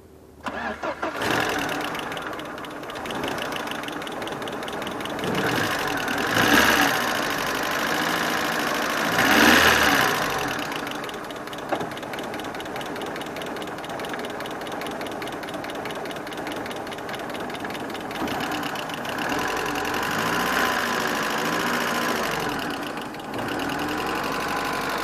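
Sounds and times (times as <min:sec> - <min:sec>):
engine revving: 0:00.6 - 0:02.3, 0:05.1 - 0:10.9, 0:18.2 - 0:25.0.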